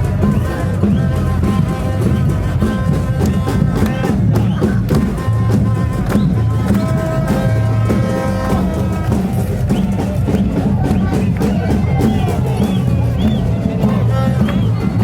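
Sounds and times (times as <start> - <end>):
carnival drumming: 0.0 - 15.0.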